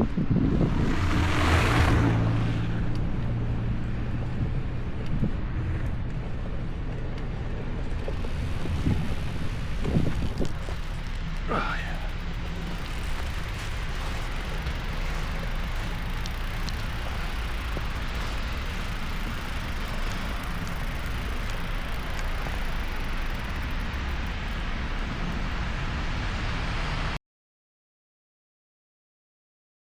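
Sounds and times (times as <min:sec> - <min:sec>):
wind buffeting microphone: 0:00.0 - 0:07.2, 0:07.8 - 0:27.0
bicycle tyres through snow: 0:00.0 - 0:27.2
faint ticks: 0:07.9 - 0:25.4.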